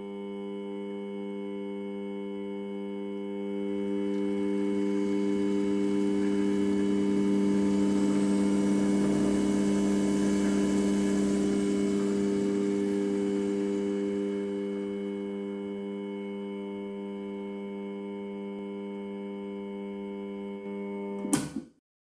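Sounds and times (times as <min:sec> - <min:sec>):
faint high whine: 0:03.4 - 0:20.0
lathe humming and whirring: 0:03.6 - 0:17.4.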